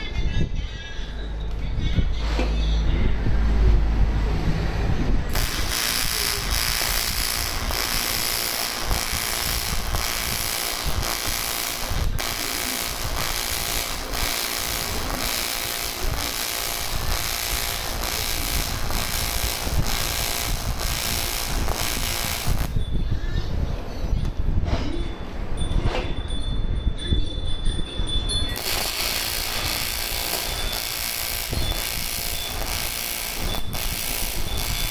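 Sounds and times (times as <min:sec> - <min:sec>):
welding arc crackling buzz: 0:05.3 - 0:22.8, 0:28.5 - 0:34.9.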